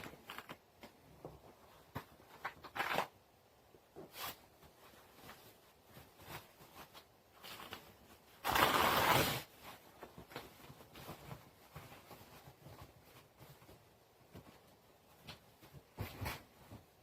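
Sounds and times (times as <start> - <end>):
packaging ripping: 8.4 - 9.5.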